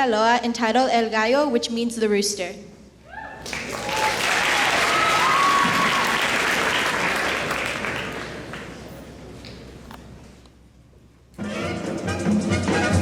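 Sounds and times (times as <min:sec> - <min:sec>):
high whoops: 0:03.0 - 0:08.0
crowd applauding and cheering: 0:03.4 - 0:09.1.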